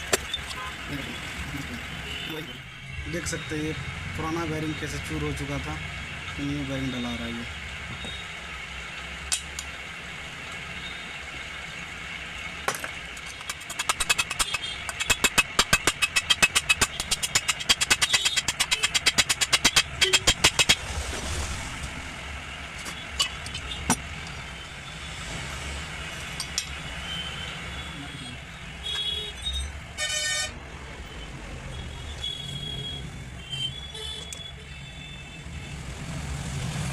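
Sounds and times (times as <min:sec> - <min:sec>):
rapid hammer strikes: 0:12.7 - 0:20.9.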